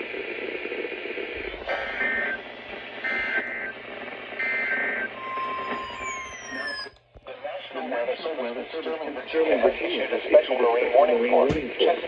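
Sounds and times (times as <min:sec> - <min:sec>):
radio hiss: 0:00.0 - 0:12.0
screechy digital data tones: 0:04.4 - 0:07.0
steady single tone: 0:04.4 - 0:07.0.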